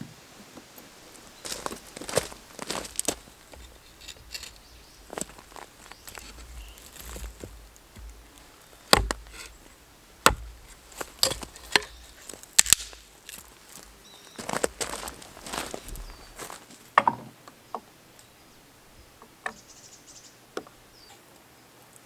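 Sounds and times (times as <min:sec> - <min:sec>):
sharp knocks and clicks: 0:08.9 - 0:09.5, 0:10.2 - 0:12.0.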